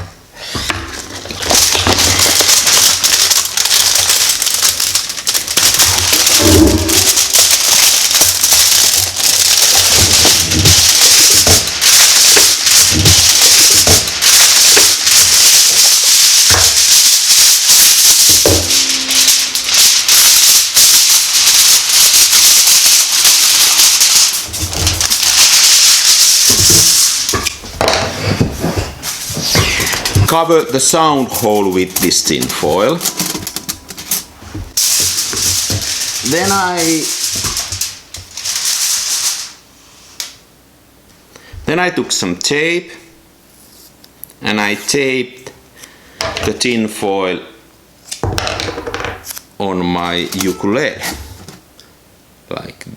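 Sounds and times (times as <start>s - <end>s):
foil crinkling: 1.0s - 39.6s, 50.1s - 50.8s.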